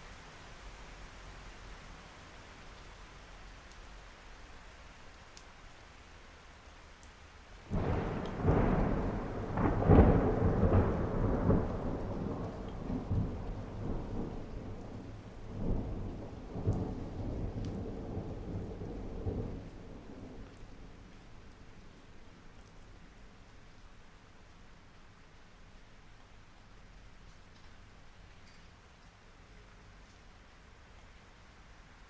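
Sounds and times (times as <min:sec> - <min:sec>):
heavy rain falling: 0:00.0 - 0:32.0
thunder rumbling: 0:07.7 - 0:21.8.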